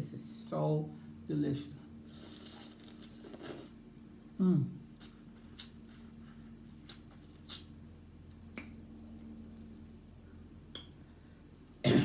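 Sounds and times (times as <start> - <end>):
faint steady hum: 0.0 - 12.0
wet eating clicks and smacks: 4.0 - 10.0, 10.6 - 11.0.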